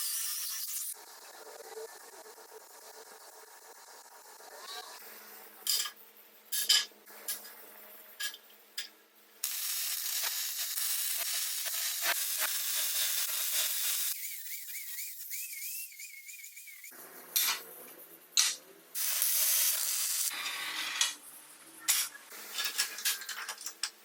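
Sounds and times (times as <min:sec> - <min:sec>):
welding arc crackling: 0:09.4 - 0:15.8, 0:18.4 - 0:20.4.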